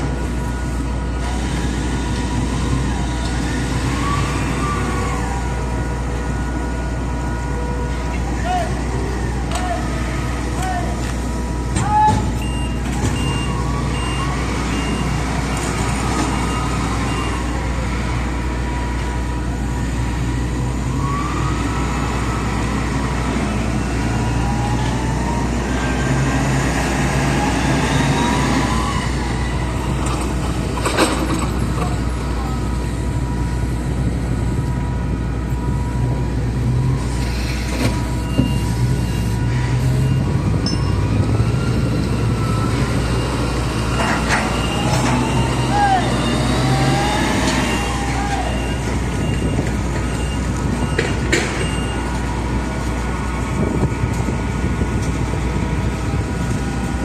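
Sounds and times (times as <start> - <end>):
vehicle engines running: 0.0 - 57.0
reversing beeper: 11.4 - 17.7, 27.0 - 30.0, 36.9 - 52.3.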